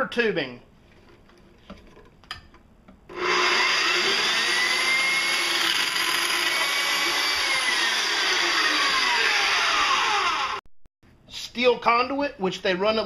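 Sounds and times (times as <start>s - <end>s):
band saw cutting metal tubing: 3.1s - 10.6s.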